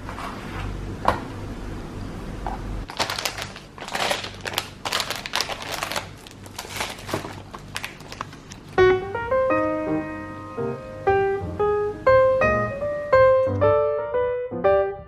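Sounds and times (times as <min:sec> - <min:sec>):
paper crinkling and rustling: 0:02.9 - 0:08.8.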